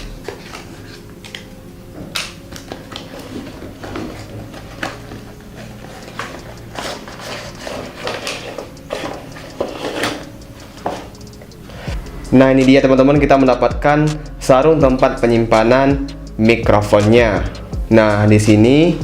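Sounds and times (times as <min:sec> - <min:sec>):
cardboard packaging rustling: 0:00.0 - 0:11.2.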